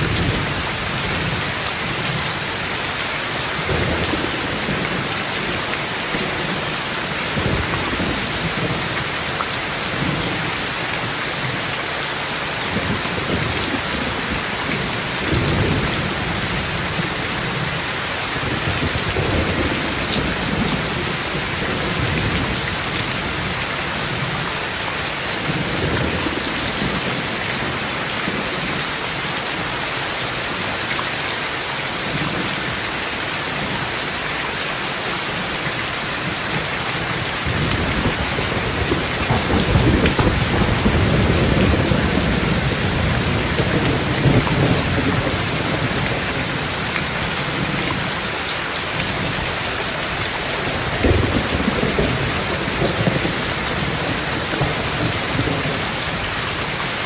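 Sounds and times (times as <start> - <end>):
steady rain: 0.0 - 57.0
thunder rumbling: 3.6 - 9.2, 12.7 - 24.5, 36.5 - 48.2, 48.9 - 56.6.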